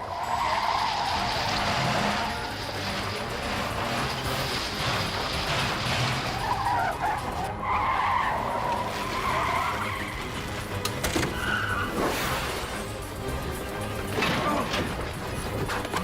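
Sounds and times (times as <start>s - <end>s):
cartoon tyres screeching: 0.0s - 13.3s
background music: 0.0s - 16.0s.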